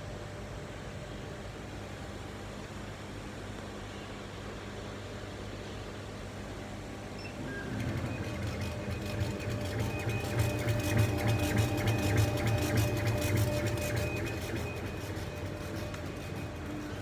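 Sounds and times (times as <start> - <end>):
laser machine low hum: 0.0 - 17.0
laser carriage whirring whine: 5.0 - 17.0.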